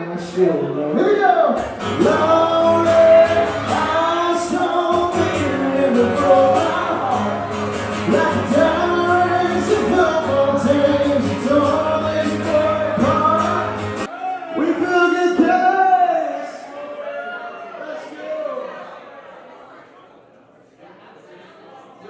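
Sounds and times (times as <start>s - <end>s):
man singing country song: 0.0s - 16.6s
instrumental backing with bass: 1.6s - 14.1s.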